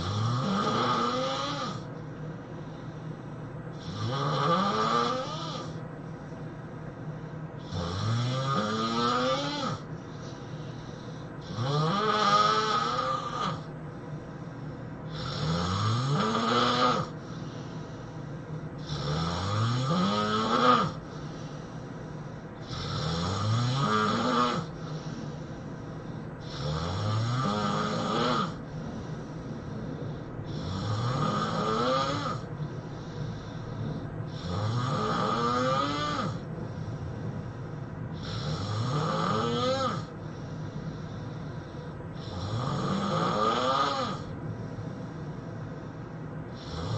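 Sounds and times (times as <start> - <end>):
person snoring: 0.0 - 1.9, 3.7 - 5.8, 7.6 - 13.7, 15.1 - 18.1, 18.8 - 21.9, 22.6 - 45.4, 46.5 - 46.9
quiet breathing: 0.0 - 4.3, 5.0 - 11.9, 12.7 - 46.9.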